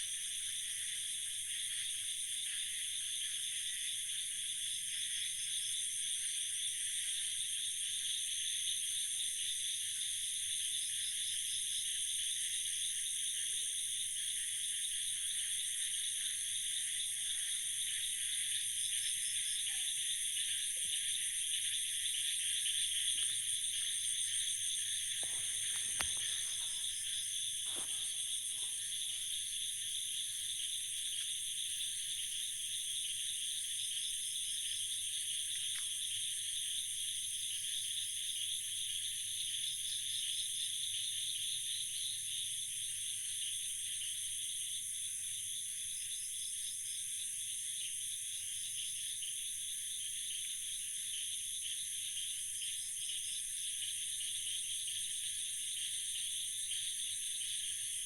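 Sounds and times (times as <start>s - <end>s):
insect chirp trains: 0.0s - 58.0s
insects trilling: 15.3s - 38.8s
faint clicks: 25.1s - 27.0s.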